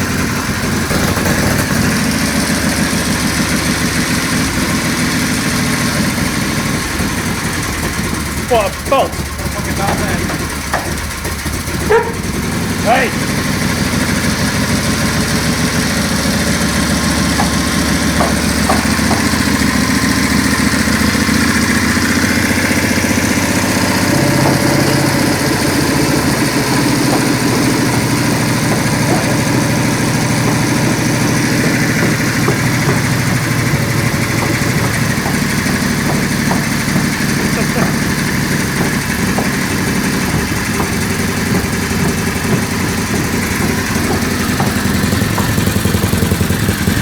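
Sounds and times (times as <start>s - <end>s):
v-twin engine running: 0.0s - 47.0s.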